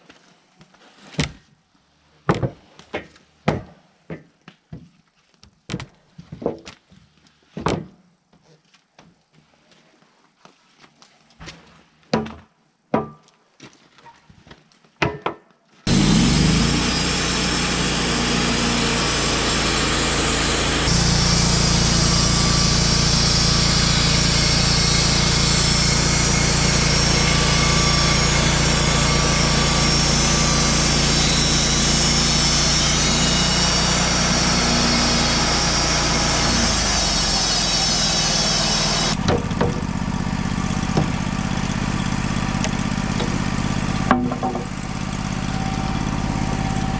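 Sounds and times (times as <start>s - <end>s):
band saw cutting log: 15.9s - 46.9s
sawmill engine running: 15.9s - 46.9s
sharp knocks: 44.1s - 44.8s.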